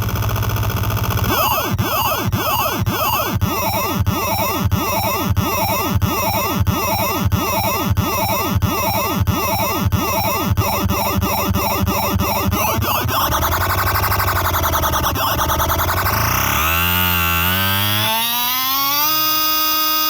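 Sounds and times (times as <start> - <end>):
glitchy synth buzzy swooping tone: 1.0 - 18.6.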